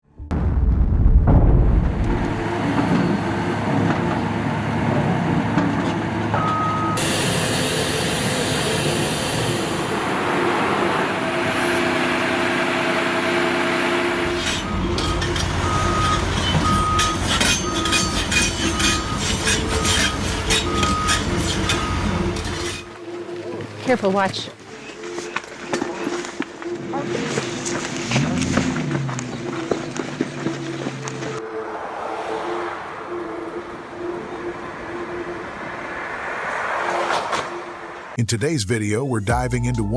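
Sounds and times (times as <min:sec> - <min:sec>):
construction machinery running: 0:02.0 - 0:23.5
backup alarm beeping: 0:06.4 - 0:07.1, 0:14.5 - 0:22.4, 0:38.2 - 0:39.9.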